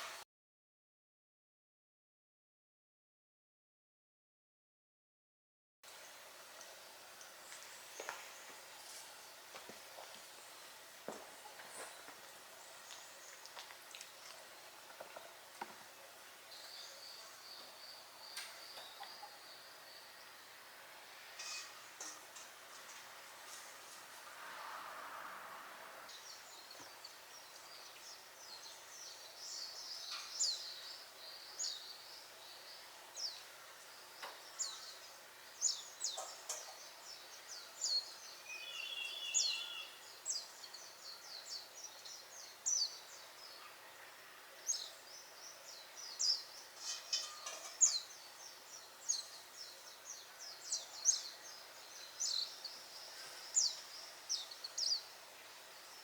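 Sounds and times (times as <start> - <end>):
faint background hiss: 5.8 - 56.0
small birds chirping: 5.9 - 24.2, 26.0 - 56.0
bird trill: 38.4 - 40.0.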